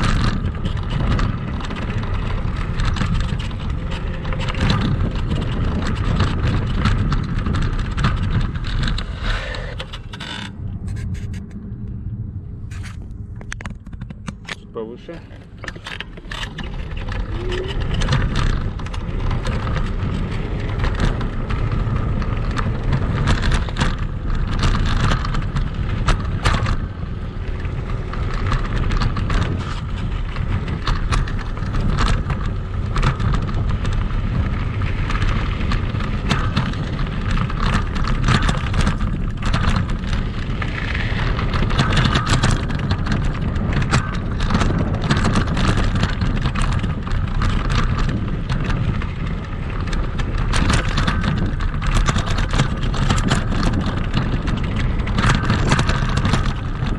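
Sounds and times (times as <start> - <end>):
electric scooter rumbling: 0.0 - 56.9
scooter rattling and clattering: 0.0 - 56.9.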